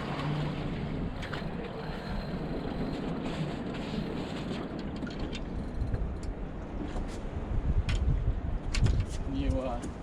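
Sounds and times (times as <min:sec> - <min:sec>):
wind rumbling on microphone: 0:00.0 - 0:10.0.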